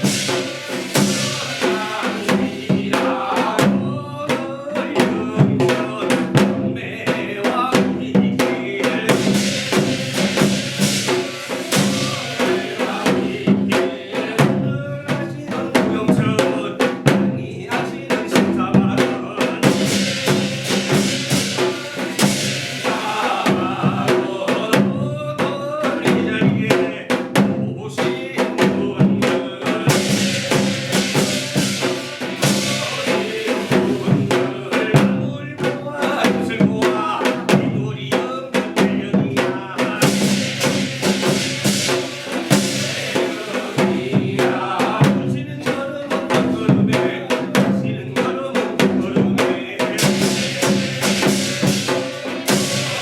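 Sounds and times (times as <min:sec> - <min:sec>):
cymbal wash: 0:00.0 - 0:03.7, 0:09.1 - 0:14.0, 0:19.5 - 0:24.8, 0:29.7 - 0:34.7, 0:40.0 - 0:44.8, 0:50.0 - 0:53.0
drums in busy rhythm: 0:00.0 - 0:53.0.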